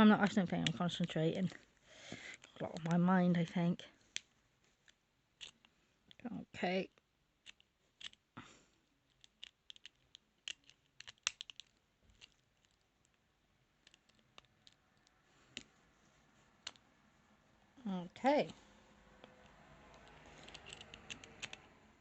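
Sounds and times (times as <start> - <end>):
lock pick clicking in padlock: 20.4 - 21.6.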